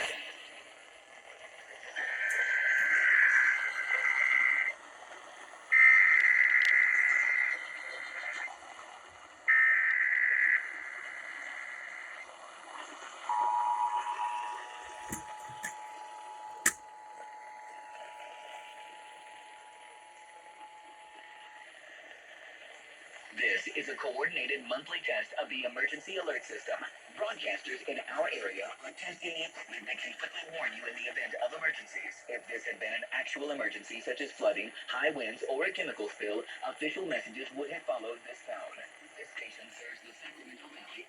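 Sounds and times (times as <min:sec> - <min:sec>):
static clicks: 0:01.9 - 0:04.7, 0:13.8 - 0:22.9
two-tone attention signal: 0:13.3 - 0:21.7
data tone bursts: 0:13.3 - 0:21.8.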